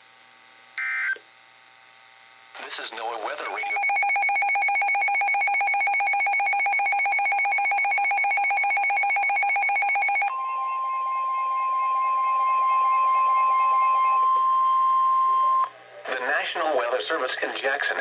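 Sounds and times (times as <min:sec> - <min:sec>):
buzzing electronic data tones: 0:03.4 - 0:15.7
high-pitched warning alarm tone: 0:03.4 - 0:15.7.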